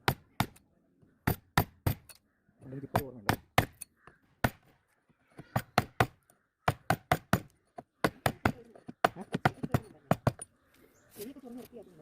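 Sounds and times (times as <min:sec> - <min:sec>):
chisel striking wood: 0:02.9 - 0:04.7, 0:05.5 - 0:10.5.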